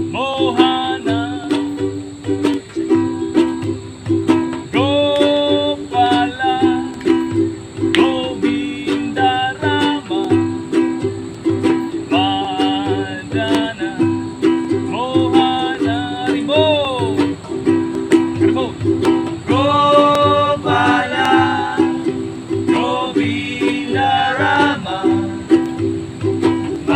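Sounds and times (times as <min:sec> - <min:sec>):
person chanting: 0:00.0 - 0:01.8, 0:04.7 - 0:07.2, 0:08.0 - 0:10.6, 0:12.0 - 0:17.4, 0:18.4 - 0:26.9
strummed string instrument: 0:00.0 - 0:26.9.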